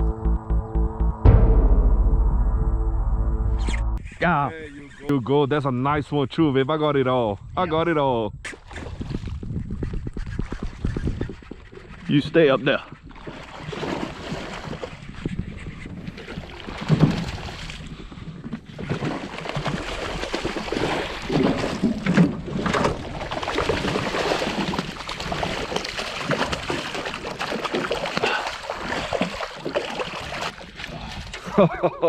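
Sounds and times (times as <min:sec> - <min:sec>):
wind on microphone: 0:07.4 - 0:19.0
water noise: 0:13.0 - 0:31.5.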